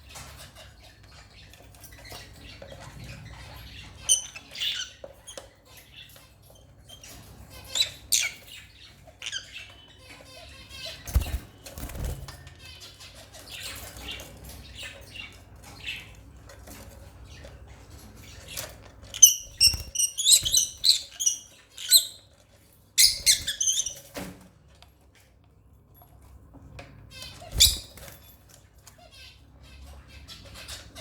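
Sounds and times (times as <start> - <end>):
birds chirping shrilly: 19.2 - 22.3, 23.0 - 24.0, 27.2 - 28.1.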